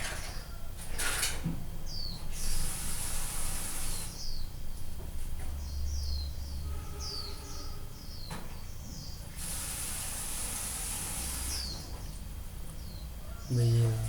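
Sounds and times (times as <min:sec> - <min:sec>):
steady hiss: 0:09.3 - 0:11.8
small birds chirping: 0:11.2 - 0:14.0.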